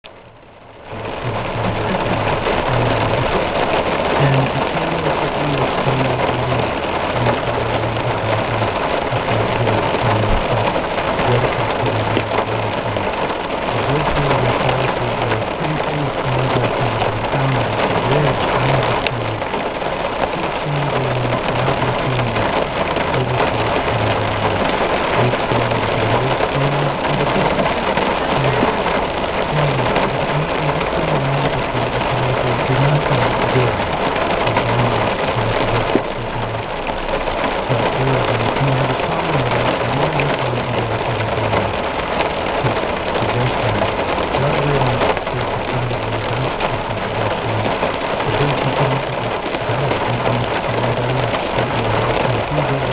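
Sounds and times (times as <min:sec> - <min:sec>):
heavy rain pouring: 0:00.0 - 0:52.9.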